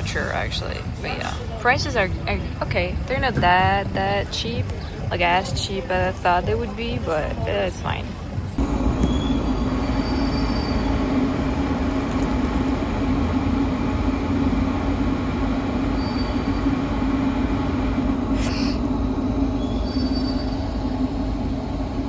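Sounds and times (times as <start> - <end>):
train rolling on rails: 0.0 - 22.0
wheel squeal: 8.5 - 11.4, 15.9 - 16.8, 19.5 - 21.1.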